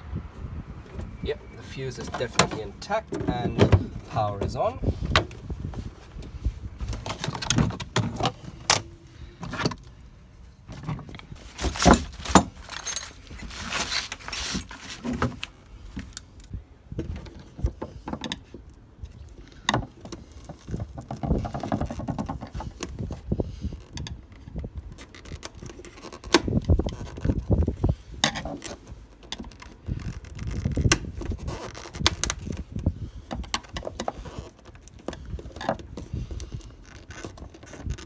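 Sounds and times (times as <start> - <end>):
scraping rustle: 0.8 - 16.4, 17.1 - 38.0
tools and small parts clicking: 11.5 - 14.8.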